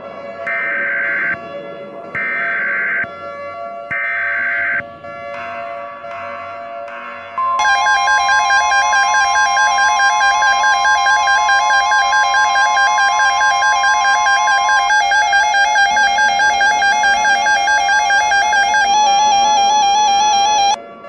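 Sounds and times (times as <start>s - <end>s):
steady high tone: 7.4s - 20.8s.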